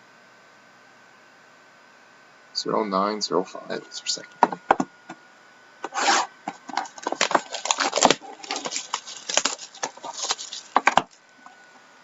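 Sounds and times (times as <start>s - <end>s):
packaging crinkling: 5.8s - 11.4s.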